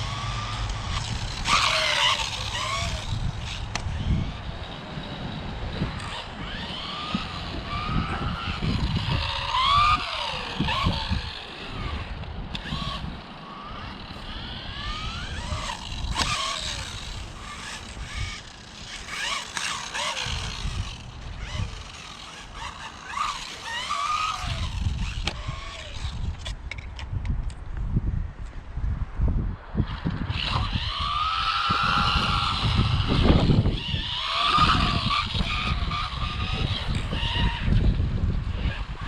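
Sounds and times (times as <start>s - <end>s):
low rumbling: 0.0s - 26.4s
electric motor whining: 0.0s - 27.0s, 29.8s - 39.0s.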